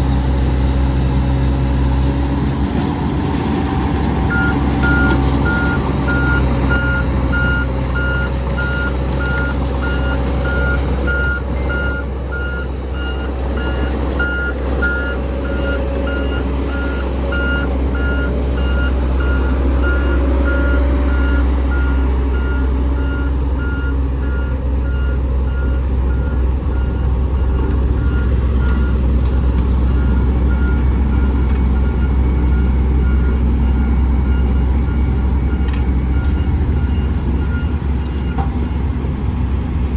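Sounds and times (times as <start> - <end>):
vehicle engine running: 0.0 - 39.9
back-up alarm beeping: 4.3 - 28.9.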